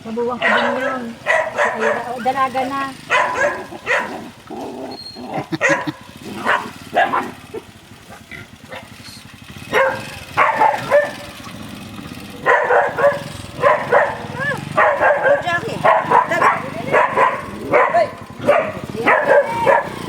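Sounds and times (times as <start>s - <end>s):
dog barking: 0.3s - 2.4s, 3.0s - 4.3s, 5.4s - 9.0s, 9.7s - 11.5s, 12.4s - 20.0s.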